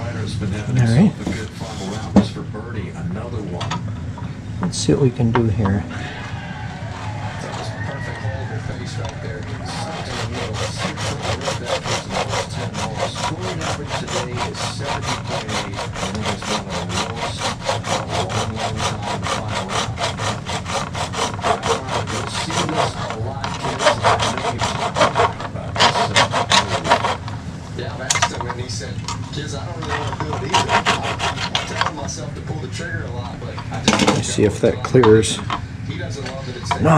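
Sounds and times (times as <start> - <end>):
small saw cutting plastic: 6.9 - 27.4, 29.3 - 32.3.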